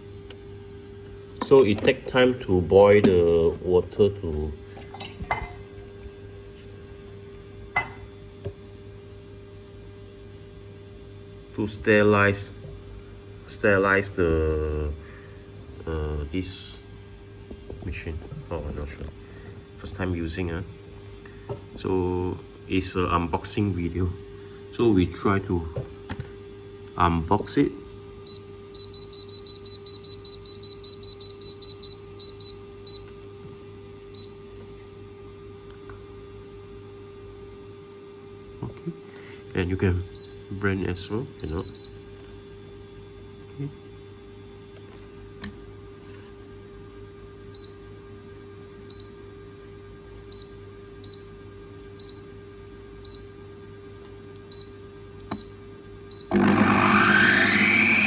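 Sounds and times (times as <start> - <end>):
steady low hum: 0.0 - 58.0
blender motor whining: 56.3 - 58.0.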